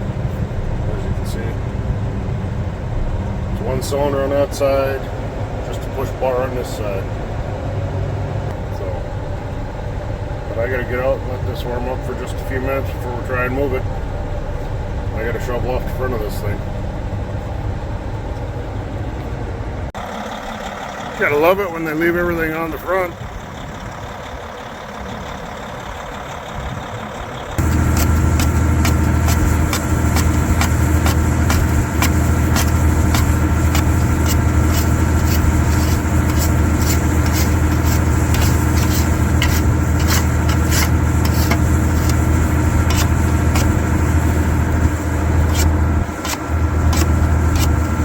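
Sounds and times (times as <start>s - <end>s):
diesel engine idling: 0.0s - 48.0s
shovel scraping snow and ice: 27.6s - 48.0s.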